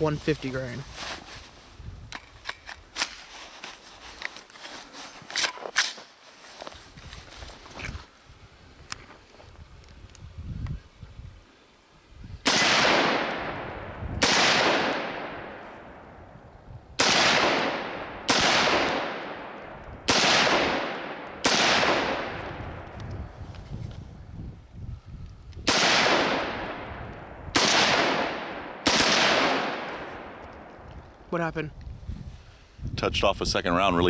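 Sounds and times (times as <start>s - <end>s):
gunshots with echo: 12.5s - 16.0s, 17.0s - 22.8s, 25.7s - 30.4s.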